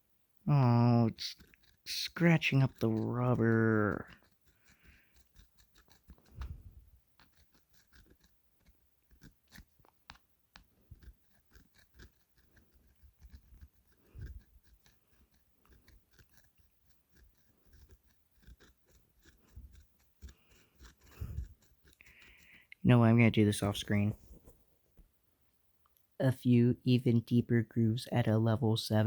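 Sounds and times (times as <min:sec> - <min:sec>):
tool scraping phone coating: 0:01.2 - 0:09.8, 0:10.6 - 0:22.6.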